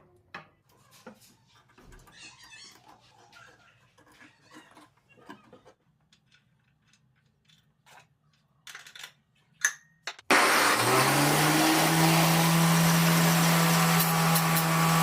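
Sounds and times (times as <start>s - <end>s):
angle grinder whining: 10.3s - 15.0s.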